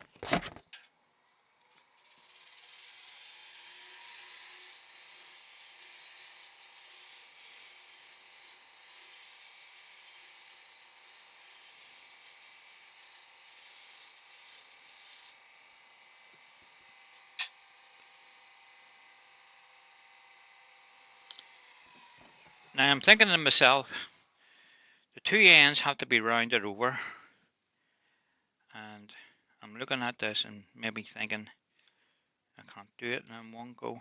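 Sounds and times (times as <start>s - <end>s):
faint lathe motor whine: 0.8s - 25.0s
gouge scraping wood on lathe: 1.7s - 15.4s.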